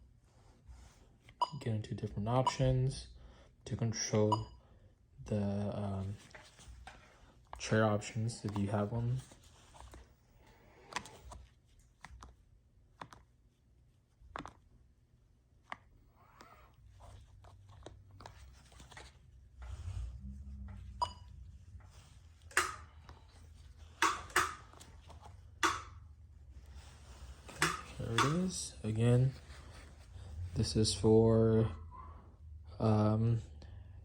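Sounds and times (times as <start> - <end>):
low hum: 19.3 - 22.5
joystick button clicks: 27.6 - 28.4.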